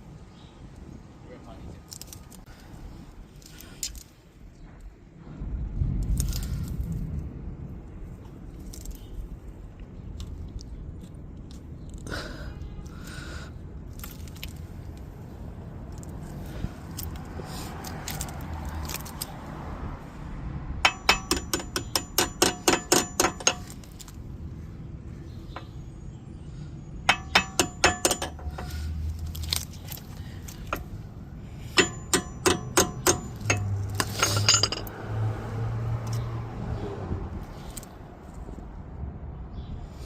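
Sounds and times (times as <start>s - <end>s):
hammer tapping metal: 20.8s - 23.8s, 27.1s - 28.7s, 31.7s - 34.9s.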